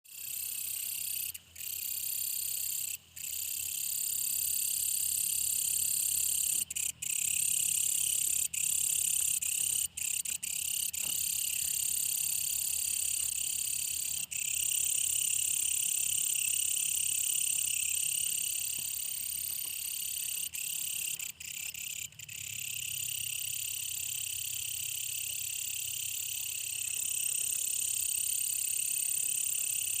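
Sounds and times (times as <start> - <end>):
katydid buzzing: 0.1 - 22.5.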